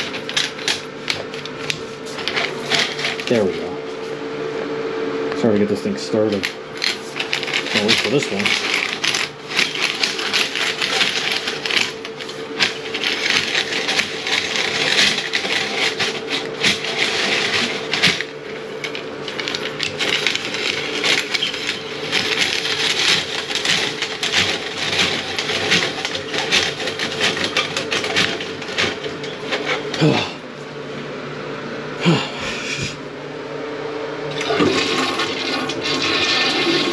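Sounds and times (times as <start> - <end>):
cable rattling and clicking: 0.0 - 3.6, 6.4 - 30.0
drain snake motor hum: 0.0 - 36.9.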